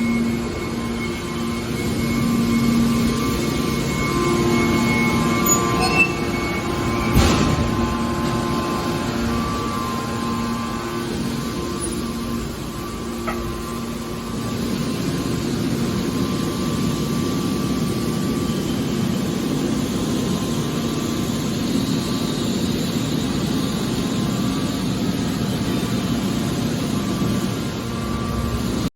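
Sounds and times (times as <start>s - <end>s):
baling press motor humming: 1.9s - 16.2s.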